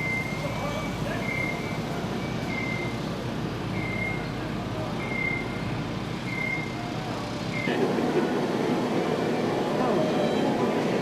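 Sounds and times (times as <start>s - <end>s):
low machinery rumble: 0.0s - 11.0s
backup alarm beeping: 7.6s - 11.0s.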